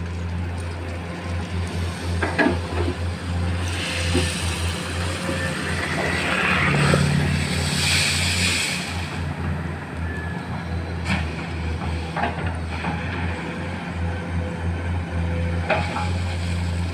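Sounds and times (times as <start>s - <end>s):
excavator diesel engine droning: 0.0s - 16.9s
rushing hiss: 3.6s - 9.4s.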